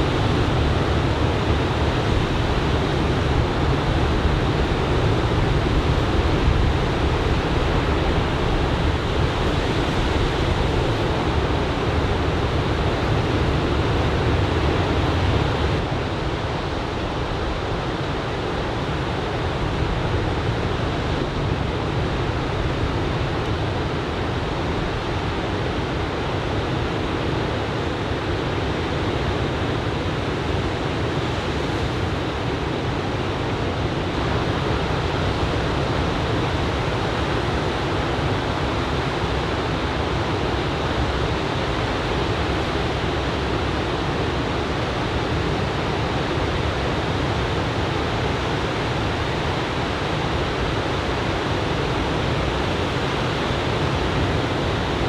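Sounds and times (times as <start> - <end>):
ocean surf breaking: 0.0 - 16.0.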